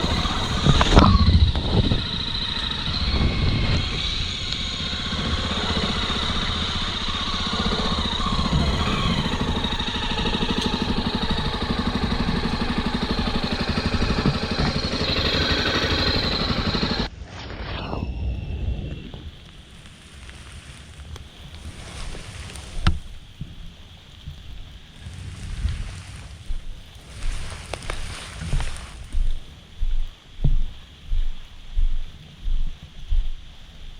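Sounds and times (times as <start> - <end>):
motorcycle engine running: 0.0 - 17.1, 24.3 - 29.4
wind and road noise: 0.0 - 31.2.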